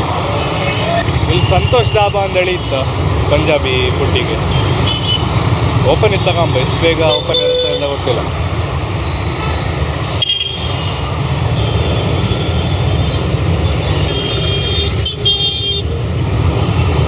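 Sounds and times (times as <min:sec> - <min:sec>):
road traffic rumble: 0:00.0 - 0:17.0
vehicle horns honking: 0:04.5 - 0:05.4, 0:07.0 - 0:08.0, 0:13.9 - 0:16.1.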